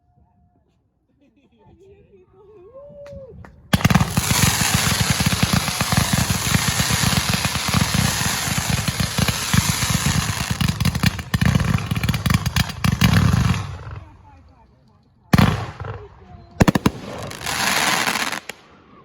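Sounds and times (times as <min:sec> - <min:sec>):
fireworks crackling: 0:03.7 - 0:14.4, 0:16.6 - 0:18.8.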